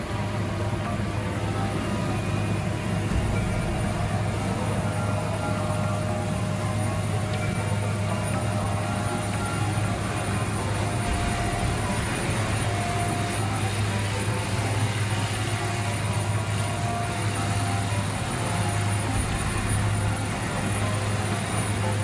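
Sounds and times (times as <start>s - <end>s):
large engine droning: 0.0s - 22.0s.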